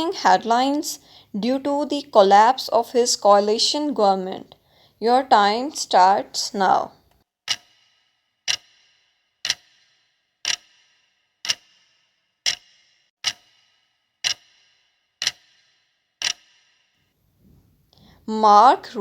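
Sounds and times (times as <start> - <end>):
clock ticking with brief ring: 7.5 - 8.8, 9.4 - 10.8, 12.5 - 16.6.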